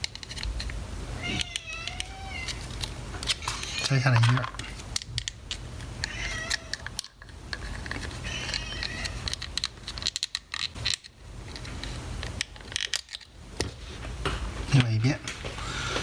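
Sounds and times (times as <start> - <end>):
plastic casing clicks and scrapes: 1.4 - 13.7.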